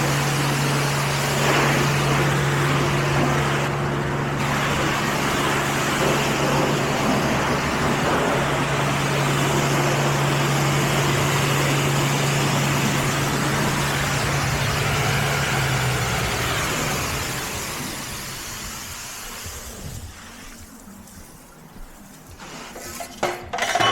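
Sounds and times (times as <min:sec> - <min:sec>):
car wash rushing noise: 0:00.0 - 0:23.1.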